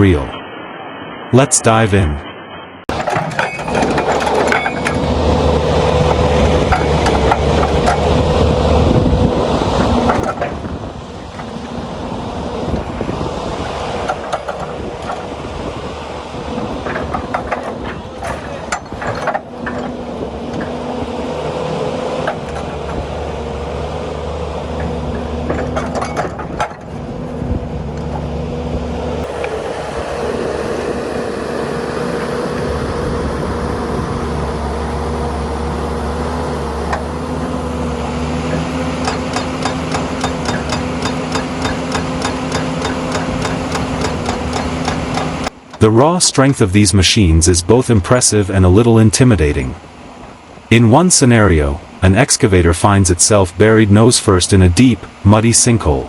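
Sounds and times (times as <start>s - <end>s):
knocks and clanks: 2.9s - 8.8s, 9.7s - 10.7s, 13.6s - 15.4s, 16.5s - 20.9s, 22.2s - 23.4s, 24.7s - 28.3s, 38.4s - 45.8s
heavy equipment engines running: 2.9s - 56.0s.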